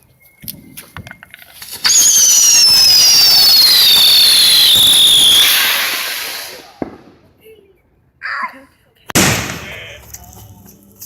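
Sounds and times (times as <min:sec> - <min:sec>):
whistling firework: 0:00.4 - 0:07.2.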